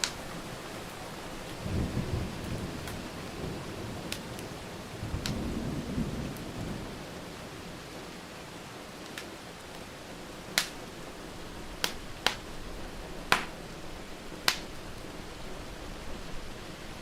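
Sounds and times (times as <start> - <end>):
fire pops and snaps: 0.0 - 1.6, 2.8 - 3.0, 4.0 - 4.5, 5.1 - 5.5, 9.0 - 11.0, 11.8 - 13.8, 14.4 - 15.2
rain hiss: 0.0 - 17.0
wood fire crackling: 0.0 - 17.0
low thunder rumble: 0.2 - 7.9.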